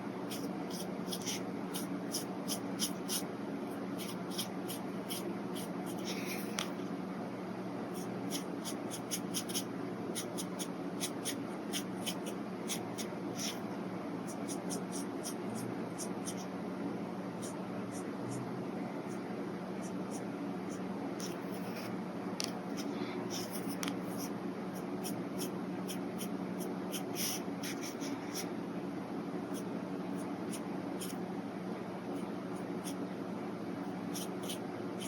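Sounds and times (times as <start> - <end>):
brush pen scratching paper: 0.3 - 6.7, 8.0 - 13.6, 14.3 - 16.5, 19.8 - 22.0, 22.7 - 28.5, 29.5 - 31.2, 32.2 - 33.0, 33.8 - 35.0.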